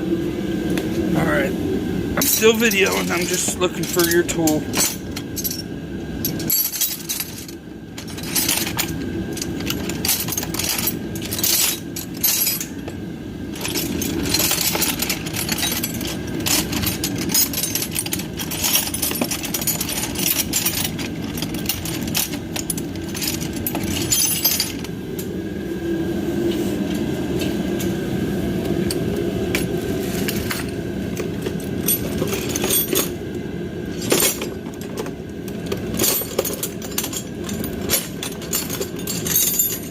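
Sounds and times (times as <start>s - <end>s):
steady low hum: 0.0s - 39.9s
metal hand tools clinking: 2.2s - 5.6s.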